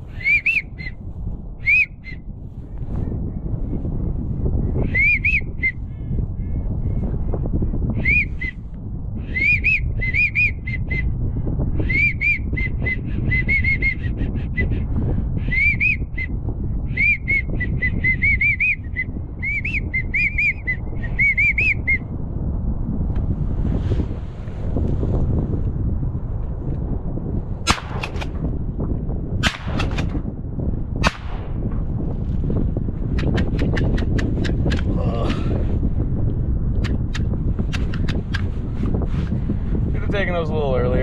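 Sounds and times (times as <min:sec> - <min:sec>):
wind noise on microphone: 0:00.0 - 0:41.0
duck call whistle: 0:00.1 - 0:01.0, 0:01.6 - 0:02.2.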